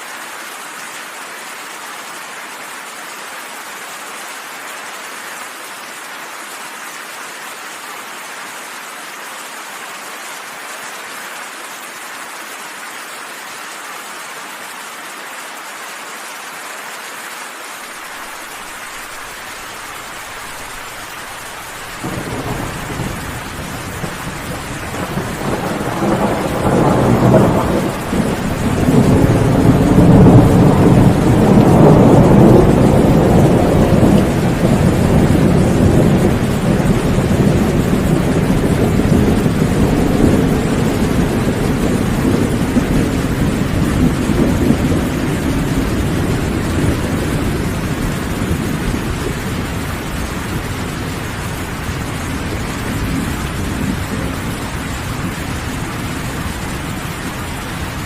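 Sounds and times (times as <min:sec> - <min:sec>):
steady rain: 0:00.0 - 0:58.0
rolling thunder: 0:20.4 - 0:58.0.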